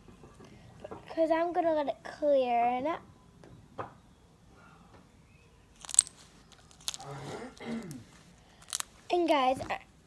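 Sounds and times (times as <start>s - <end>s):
sharp crackle: 5.8s - 9.1s.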